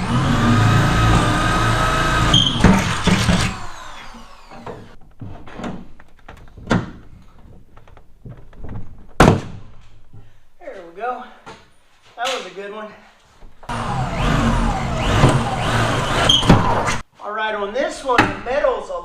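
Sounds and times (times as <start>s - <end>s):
mechanical whir: 13.7s - 17.0s.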